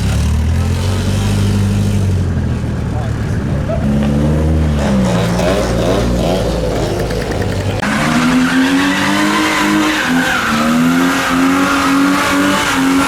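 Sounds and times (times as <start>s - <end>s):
car engine revving hard: 3.6s - 13.0s
tyres squealing: 4.8s - 13.0s.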